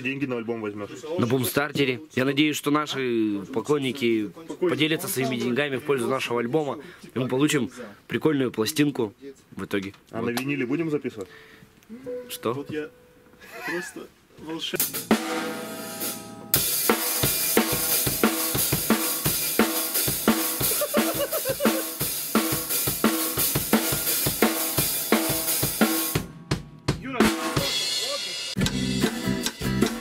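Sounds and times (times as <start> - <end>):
band music with drum kit: 14.7 - 30.0.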